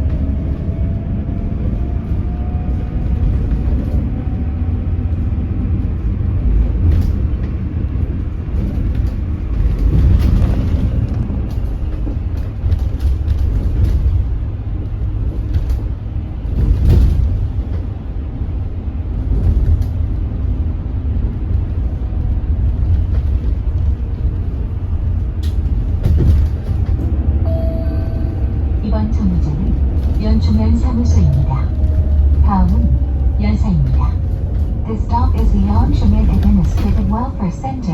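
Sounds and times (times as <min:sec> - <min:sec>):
bus cabin rumble: 0:00.0 - 0:37.9
knocks and rattles: 0:25.3 - 0:27.2.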